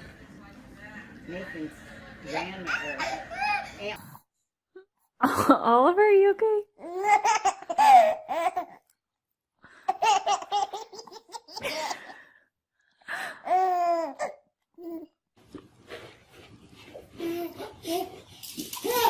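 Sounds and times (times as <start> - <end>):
baby laughing: 2.7 - 3.8, 6.8 - 8.8, 9.9 - 12.1, 13.5 - 15.1, 17.2 - 19.0.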